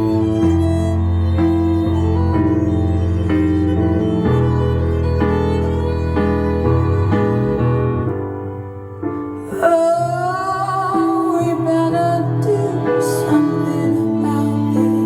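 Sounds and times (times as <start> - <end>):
held instrumental chords: 0.0 - 14.0
person singing with vibrato: 9.4 - 15.0.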